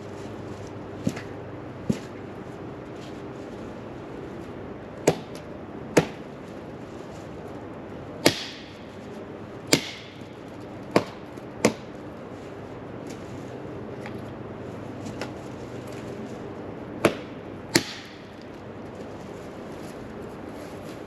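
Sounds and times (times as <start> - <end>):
sharp chopping strikes: 5.0 - 5.4, 6.0 - 6.2, 8.2 - 8.8, 9.7 - 10.2, 10.9 - 11.9, 17.0 - 18.2.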